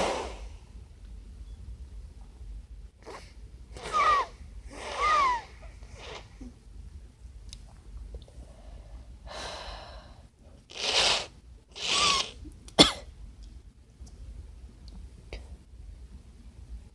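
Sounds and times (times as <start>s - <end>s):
person sneezing: 3.1s - 6.3s, 10.8s - 13.0s.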